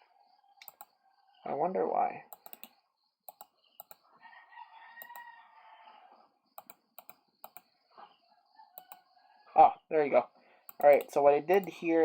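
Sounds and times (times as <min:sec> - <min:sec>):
mouse and keyboard clicks: 0:00.6 - 0:00.9, 0:02.3 - 0:04.0, 0:05.0 - 0:05.2, 0:06.6 - 0:07.7, 0:08.8 - 0:09.0, 0:10.7 - 0:11.8.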